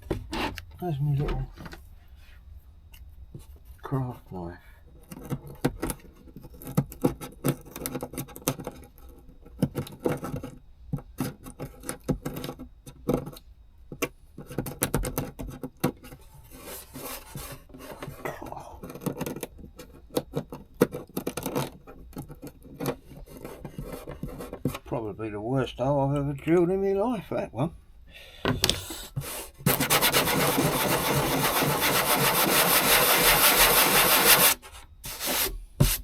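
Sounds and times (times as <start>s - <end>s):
craft knife scraping wood: 0.0s - 0.7s, 16.0s - 24.8s, 28.5s - 36.0s.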